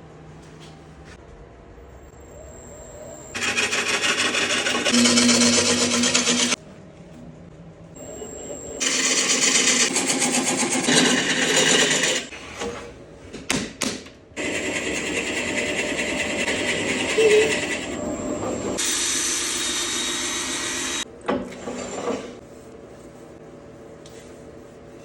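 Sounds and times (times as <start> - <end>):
power tool cutting wood: 3.4 - 6.6, 14.4 - 21.0.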